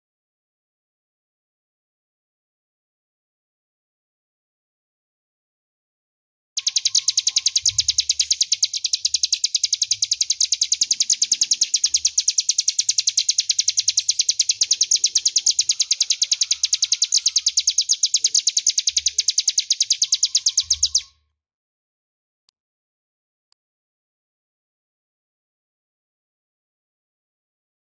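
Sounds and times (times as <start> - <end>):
bird singing sharp high chips: 6.6 - 21.2.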